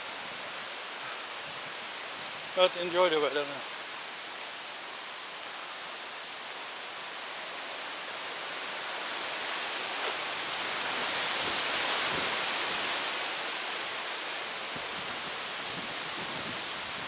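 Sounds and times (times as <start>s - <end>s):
stormy wind through trees: 0.0s - 17.0s.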